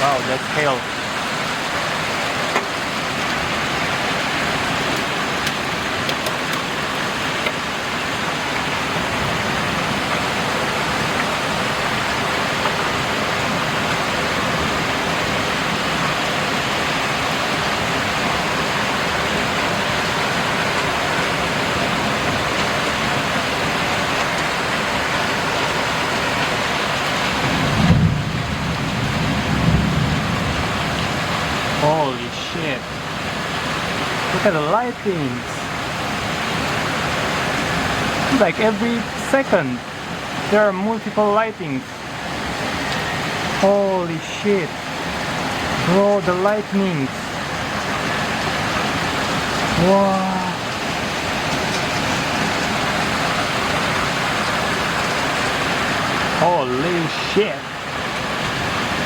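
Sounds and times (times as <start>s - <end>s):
heavy rain and hail: 0.0s - 59.0s
thunder rumble: 27.4s - 31.8s.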